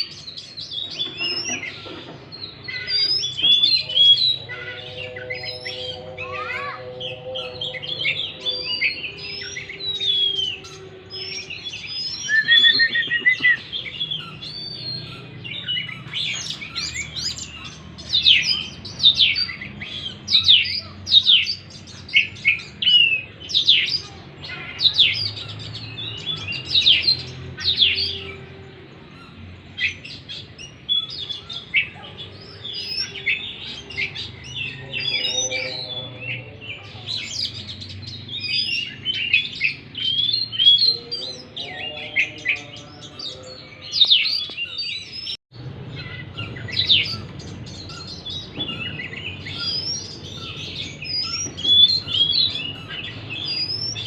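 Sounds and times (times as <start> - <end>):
lower-pitched bird call: 0.9 - 54.0
bird singing whistles: 2.8 - 17.4.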